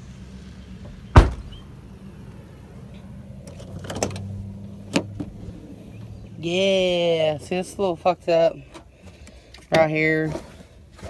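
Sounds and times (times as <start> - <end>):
car hatch latch clunk: 0.9 - 1.7.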